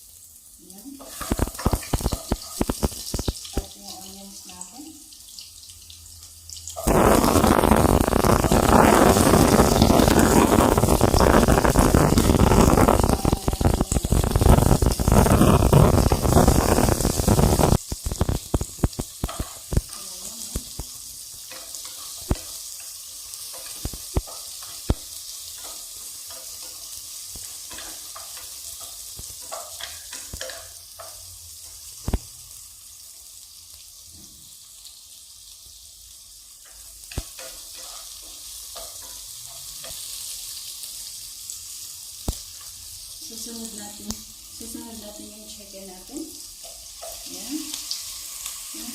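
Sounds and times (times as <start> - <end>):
garlic sizzling in oil: 0.0 - 48.9
spatula clicking on pan: 21.5 - 31.2, 36.6 - 38.1.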